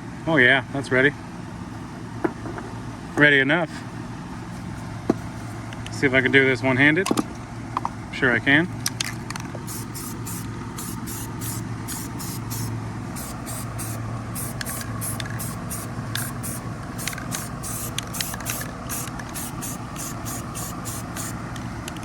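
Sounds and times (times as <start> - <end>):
steady low hum: 0.0 - 22.0
spray can hissing bursts: 9.6 - 21.5.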